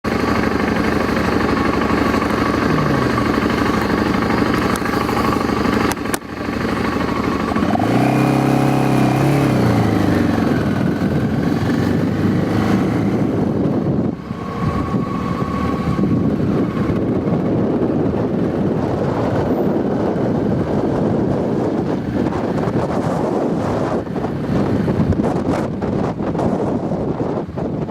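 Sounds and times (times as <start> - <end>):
motorcycle engine running: 0.1 - 27.9
deep pitched tone: 0.8 - 5.9.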